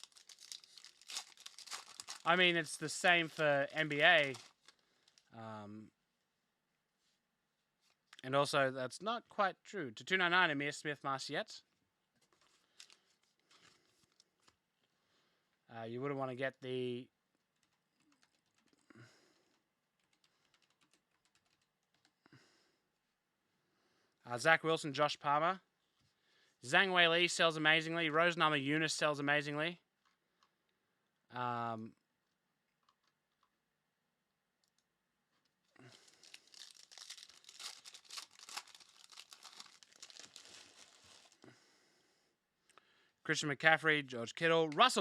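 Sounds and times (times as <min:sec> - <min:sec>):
wrapper tearing and crinkling: 0:00.0 - 0:05.3, 0:35.8 - 0:41.4
soft rustle: 0:36.1 - 0:41.4.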